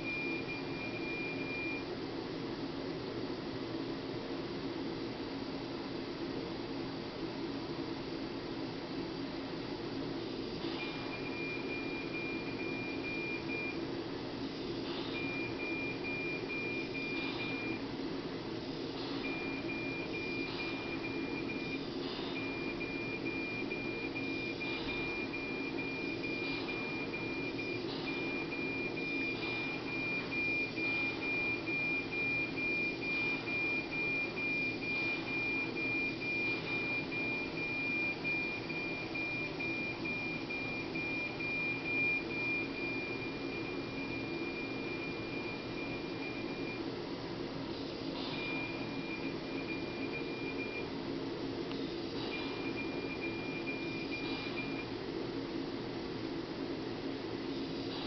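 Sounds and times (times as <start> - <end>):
high steady alarm beep: 0.0 - 1.9, 10.6 - 13.8, 14.8 - 17.9, 18.9 - 46.9, 47.9 - 51.0, 52.1 - 55.0
ventilator humming and cycling: 0.0 - 58.0.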